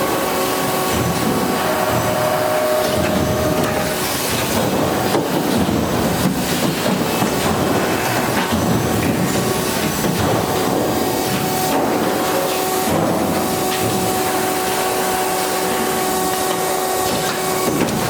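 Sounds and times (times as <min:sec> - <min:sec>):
machinery din: 0:00.9 - 0:12.2.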